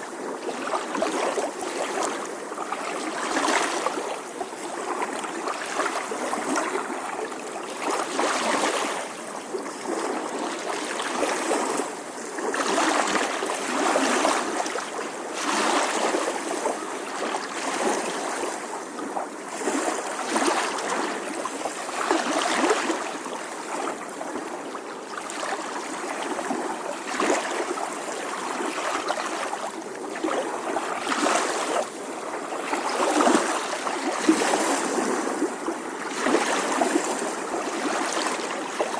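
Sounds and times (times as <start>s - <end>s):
small waves lapping on shore: 0.0s - 38.9s.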